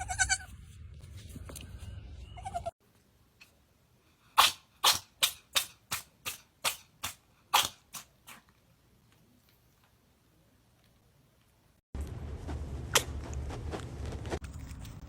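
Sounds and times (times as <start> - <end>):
animal sneezing: 4.4 - 5.2, 7.5 - 8.4.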